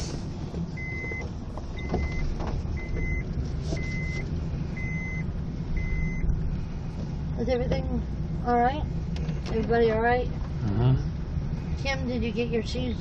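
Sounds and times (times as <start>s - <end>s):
low car engine rumble: 0.0s - 13.0s
car warning chime beeping: 0.8s - 6.3s.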